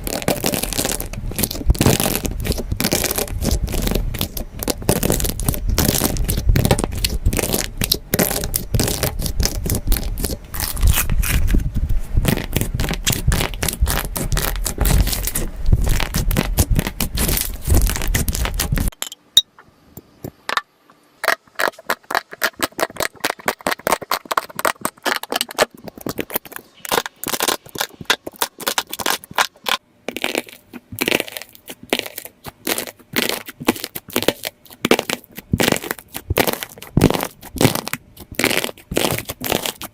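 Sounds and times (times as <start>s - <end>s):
slime crackling and clicking: 21.6s - 39.9s.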